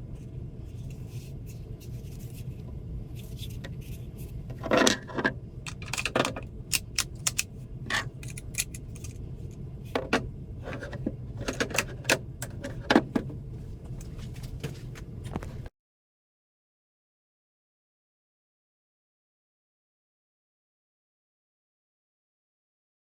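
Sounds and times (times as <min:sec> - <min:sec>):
steady low hum: 0:00.0 - 0:15.7
small hard parts clinking: 0:04.6 - 0:09.2.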